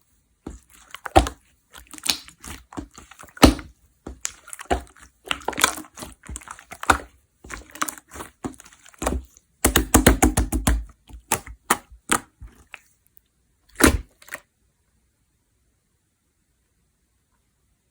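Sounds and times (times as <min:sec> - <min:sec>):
slime squishing and popping: 0:00.5 - 0:12.8, 0:13.7 - 0:14.4.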